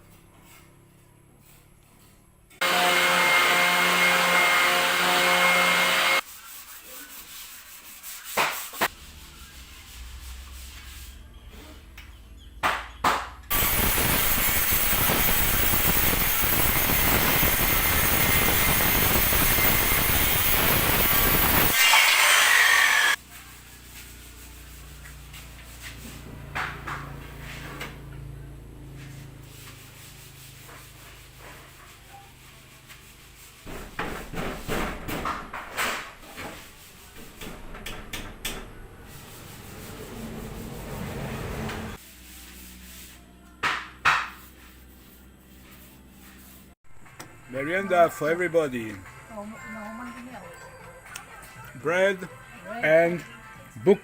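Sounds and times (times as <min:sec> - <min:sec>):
electric power tool whining: 0:13.5 - 0:23.2.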